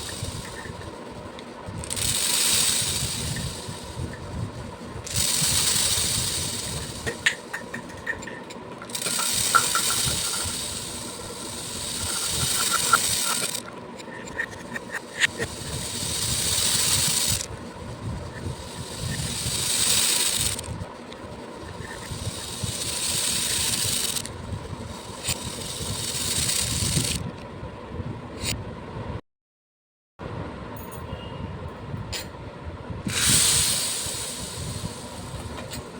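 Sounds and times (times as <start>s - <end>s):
beads pouring rattle: 0.0s - 1.0s, 1.8s - 8.1s, 8.8s - 13.7s, 14.9s - 17.6s, 18.2s - 27.2s, 33.1s - 35.9s
single beads clicking: 0.0s - 4.2s, 5.0s - 8.2s, 8.9s - 13.7s, 14.9s - 17.5s, 18.6s - 24.3s.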